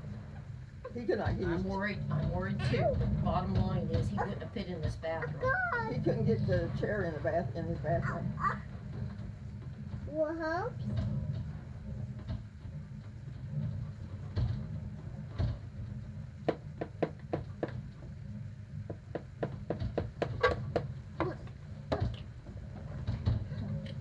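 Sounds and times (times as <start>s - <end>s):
hurricane wind roaring: 0.0s - 16.3s
sharp knocks and cracks: 10.8s - 18.2s, 18.8s - 24.0s.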